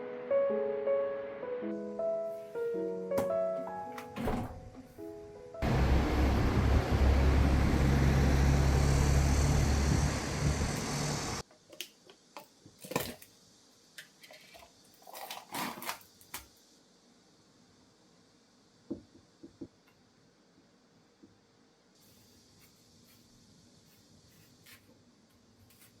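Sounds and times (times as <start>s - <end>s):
appliance motor humming: 5.6s - 11.4s.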